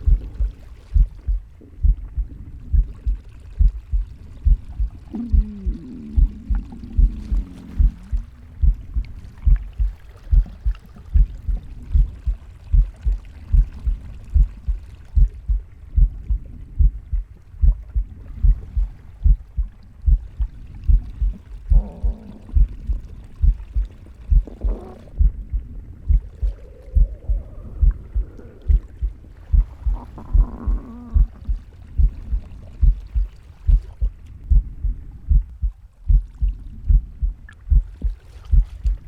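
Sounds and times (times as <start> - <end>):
heartbeat thumps: 0.0 - 39.0
soft breathing or gut sounds: 4.4 - 11.2, 20.9 - 33.2.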